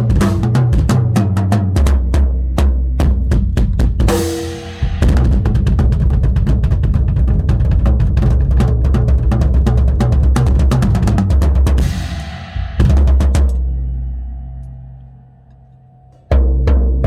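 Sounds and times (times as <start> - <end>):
drum kit fast strokes: 0.0 - 1.9, 3.4 - 13.8
low drum ringing: 1.8 - 17.0.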